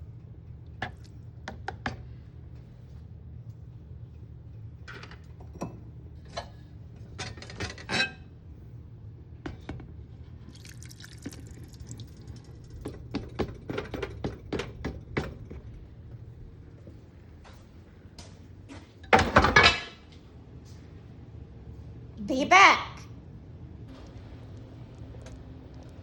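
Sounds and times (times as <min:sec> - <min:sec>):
liquid pouring: 0:10.4 - 0:13.4, 0:23.9 - 0:26.0.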